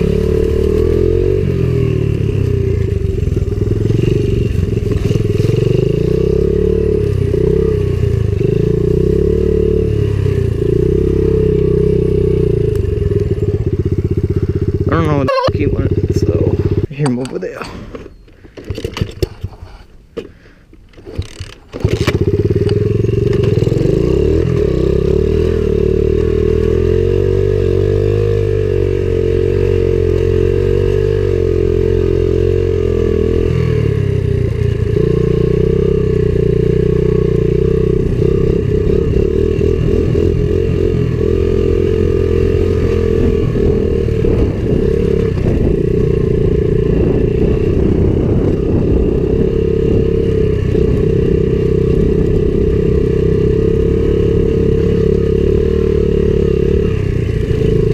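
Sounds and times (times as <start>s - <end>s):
pit bike engine running: 0.0s - 16.9s, 21.4s - 57.9s
clicking and clatter: 20.8s - 23.6s.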